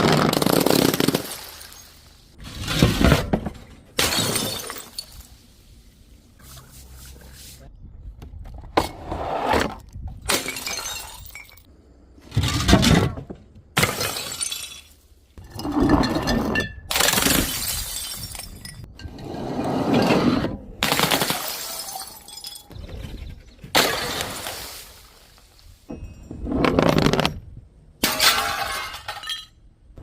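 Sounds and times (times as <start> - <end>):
glass bottles shattering: 0.5 - 2.1, 4.0 - 5.4, 10.3 - 11.7, 13.8 - 18.9, 21.2 - 22.7, 28.0 - 29.7.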